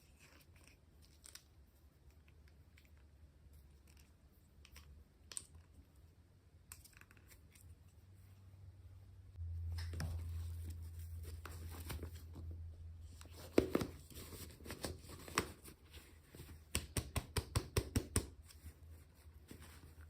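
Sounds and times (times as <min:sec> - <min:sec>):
low hum: 0:08.0 - 0:13.5.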